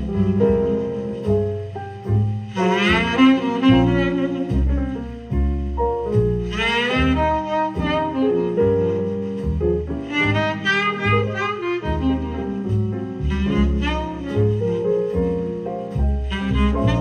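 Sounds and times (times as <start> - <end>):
saxophone: 0.0 - 1.4, 2.5 - 5.3, 6.3 - 17.0
double bass: 0.0 - 17.0.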